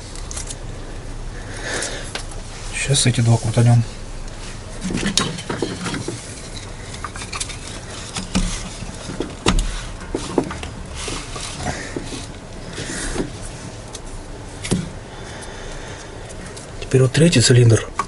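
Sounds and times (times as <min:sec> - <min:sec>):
metal tools clinking and knocking: 0:04.8 - 0:09.4.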